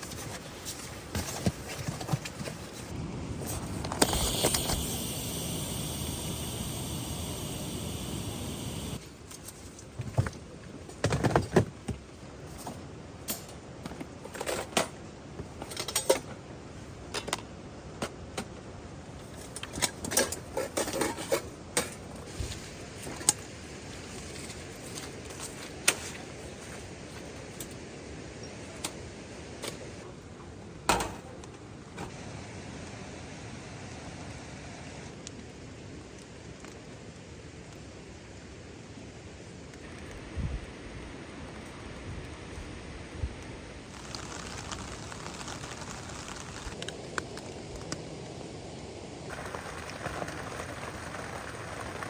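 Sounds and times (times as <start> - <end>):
rain hiss: 2.4 - 9.2, 42.3 - 52.0.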